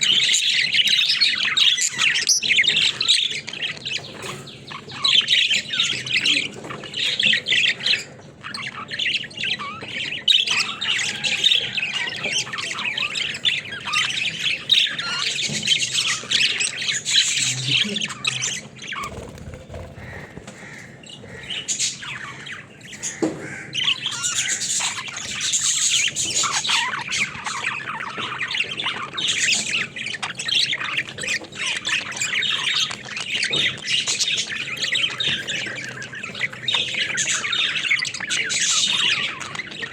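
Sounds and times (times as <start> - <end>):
budgies chattering: 0.0 - 39.9.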